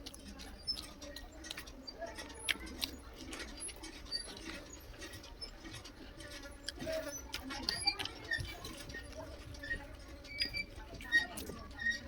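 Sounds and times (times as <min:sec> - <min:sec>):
wet chewing and lip smacks: 0:02.5 - 0:02.9.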